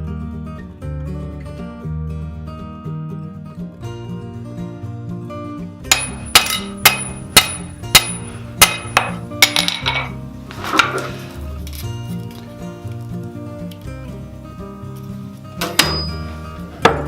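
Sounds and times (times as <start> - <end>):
background music: 0.0 - 17.0.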